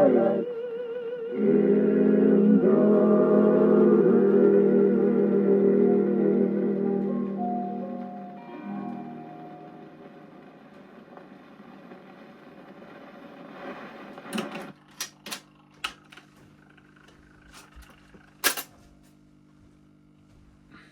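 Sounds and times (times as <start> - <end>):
song from a record: 0.0 - 14.9
record surface noise: 8.0 - 19.5
sharp record clicks: 10.7 - 16.2.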